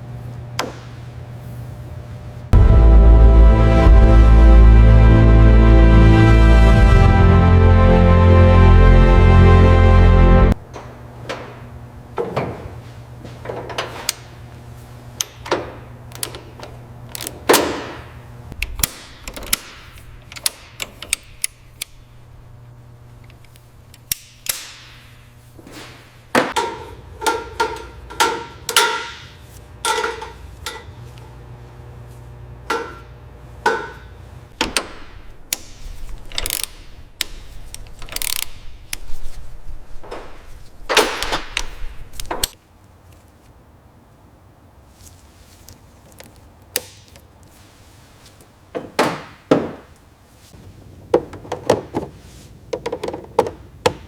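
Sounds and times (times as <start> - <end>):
hand tools knocking on metal: 51.1 - 54.0.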